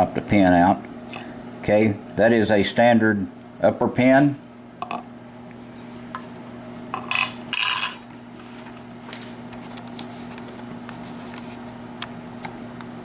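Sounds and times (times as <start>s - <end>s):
metal pins clinking on hard surface: 7.1s - 8.0s.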